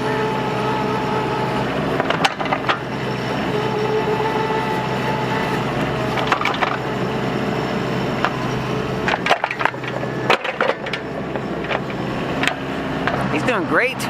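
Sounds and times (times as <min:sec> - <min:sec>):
machine whine: 0:00.0 - 0:13.4
mini excavator running: 0:00.0 - 0:14.0
cracks and knocks of soil breaking: 0:09.0 - 0:11.0.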